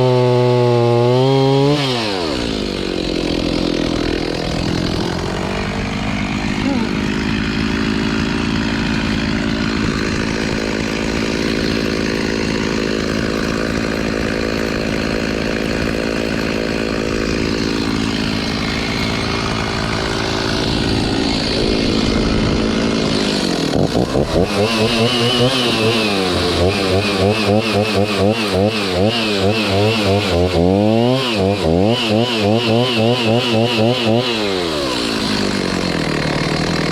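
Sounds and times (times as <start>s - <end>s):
chainsaw cutting tree: 0.0s - 36.9s.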